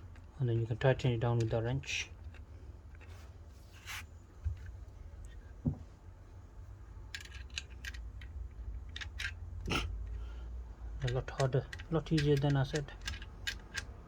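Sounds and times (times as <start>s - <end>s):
soft knock: 5.6s - 5.9s
wrench clicks and scrapes: 11.0s - 14.0s.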